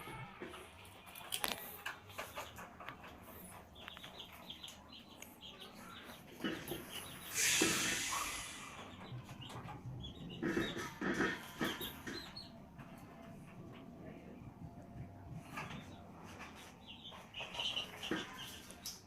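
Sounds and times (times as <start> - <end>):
small birds chirping: 0.9 - 19.0
loud hiss: 7.3 - 8.9.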